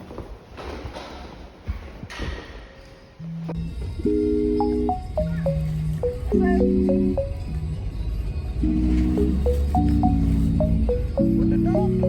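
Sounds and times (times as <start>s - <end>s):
lofi background music: 8.6s - 12.0s.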